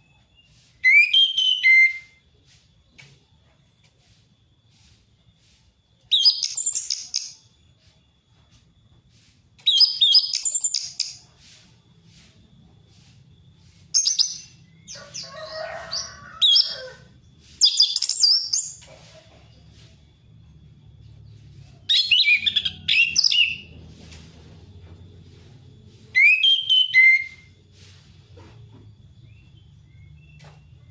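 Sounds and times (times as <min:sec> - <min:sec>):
thrush singing whistled song: 0:00.0 - 0:02.3, 0:05.4 - 0:08.6, 0:09.6 - 0:12.4, 0:13.5 - 0:16.9, 0:17.5 - 0:18.8, 0:20.2 - 0:23.9, 0:26.0 - 0:28.0.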